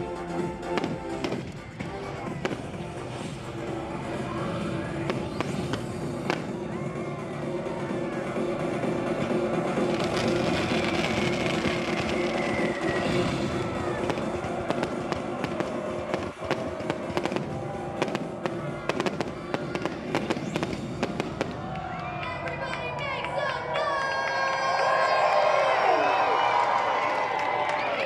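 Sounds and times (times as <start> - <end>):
music: 0.0 - 24.6
fireworks bursting and crackling: 0.6 - 3.6, 4.9 - 6.7, 9.3 - 22.0
sharp firework bangs: 5.1 - 6.5, 9.9 - 21.7.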